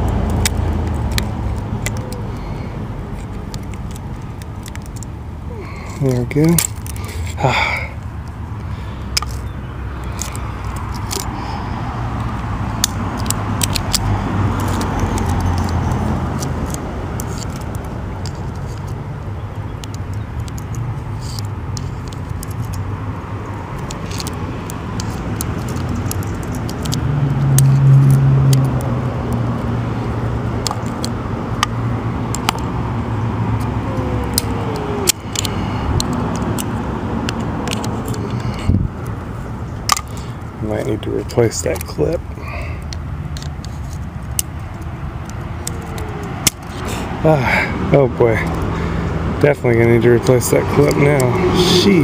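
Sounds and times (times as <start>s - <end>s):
low traffic rumble: 0.0s - 52.0s
vehicle passing: 0.0s - 52.0s
metal clicks of small tools on lock: 0.3s - 2.2s, 12.2s - 19.0s, 19.7s - 22.8s, 23.8s - 27.0s, 30.6s - 32.7s, 34.2s - 38.4s, 39.8s - 40.2s, 42.8s - 46.8s.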